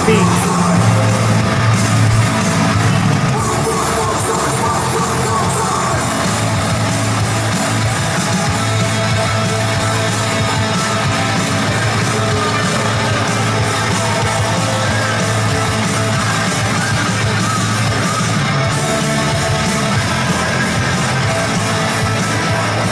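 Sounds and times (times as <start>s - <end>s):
person singing: 0.0s - 1.6s
distorted electric guitars: 0.0s - 22.9s.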